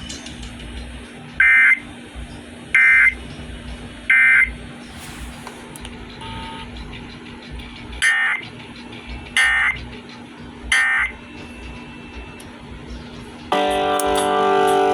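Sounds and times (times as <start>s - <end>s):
low steady hum: 0.0s - 14.9s
music: 0.0s - 14.9s
buzzy data tone bursts: 13.5s - 14.9s.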